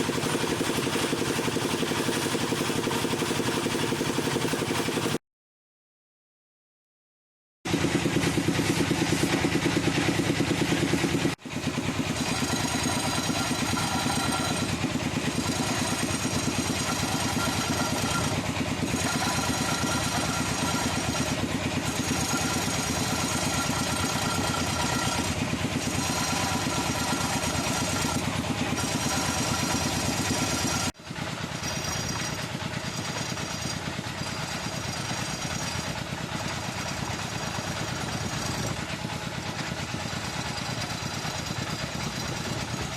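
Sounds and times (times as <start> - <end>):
wood lathe hum: 11.5 - 31.0
turning tool chatter: 11.5 - 42.9.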